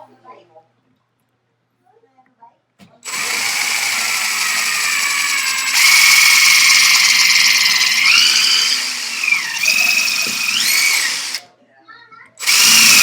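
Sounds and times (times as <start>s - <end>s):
electric drill whining into wood: 3.0s - 11.4s, 12.4s - 13.0s.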